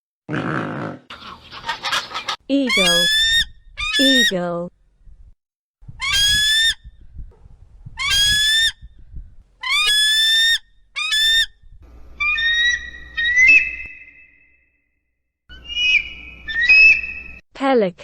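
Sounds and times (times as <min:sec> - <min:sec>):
eagle screaming: 0:02.6 - 0:04.4, 0:06.0 - 0:06.8, 0:08.0 - 0:08.8, 0:09.6 - 0:11.5, 0:12.2 - 0:14.4, 0:15.5 - 0:17.4
eagle whistled calls: 0:02.7 - 0:04.4, 0:06.0 - 0:06.9, 0:08.0 - 0:08.9, 0:09.6 - 0:11.6, 0:12.2 - 0:14.6, 0:15.5 - 0:17.4.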